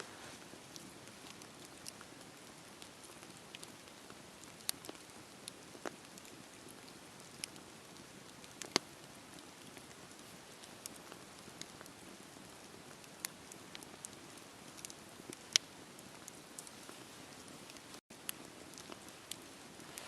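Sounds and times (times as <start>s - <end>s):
wood fire crackling and popping: 0.0s - 20.0s.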